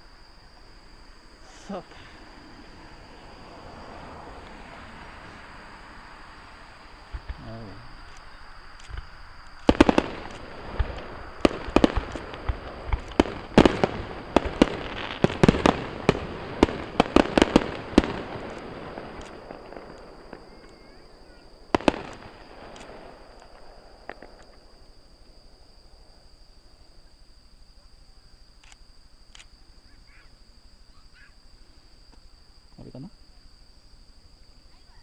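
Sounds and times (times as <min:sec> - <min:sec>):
crickets and insects trilling: 0:00.0 - 0:35.0
fireworks bangs: 0:06.2 - 0:26.3.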